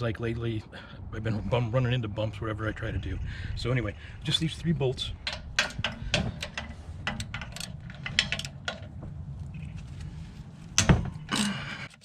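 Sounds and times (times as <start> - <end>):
steady low hum: 0.6 - 12.0
ratchet wrench clicking: 5.2 - 8.8.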